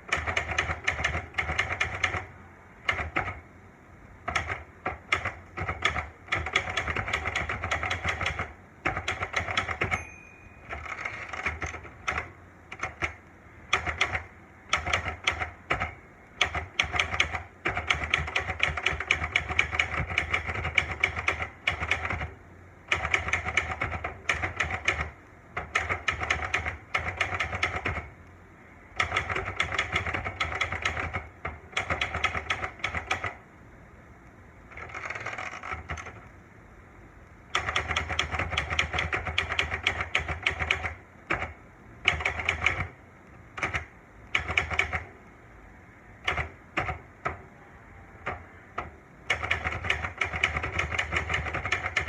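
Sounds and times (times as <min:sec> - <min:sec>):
typewriter key strikes: 0:04.3 - 0:22.3, 0:49.3 - 0:52.0
typewriter bell ring: 0:09.5 - 0:11.8.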